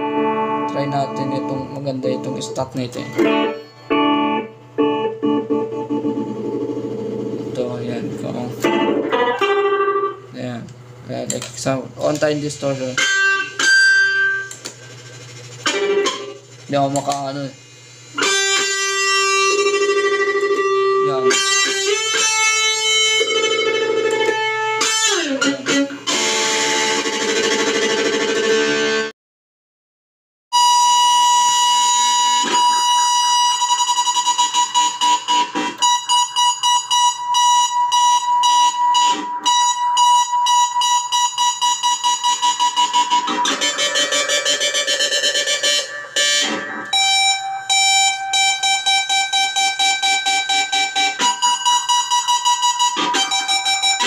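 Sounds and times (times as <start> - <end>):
distorted electric guitar: 0.0 - 29.1, 30.6 - 54.0.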